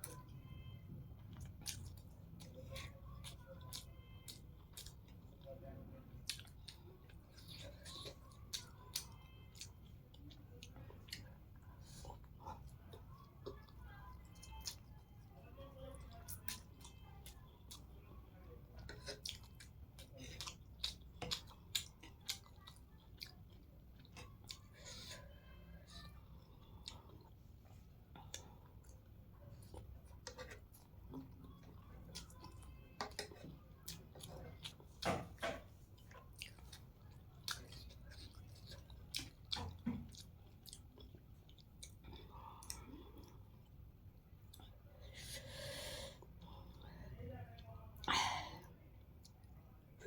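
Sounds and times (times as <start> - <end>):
wet chewing and lip smacks: 6.2 - 14.9, 18.7 - 25.0, 25.8 - 43.8.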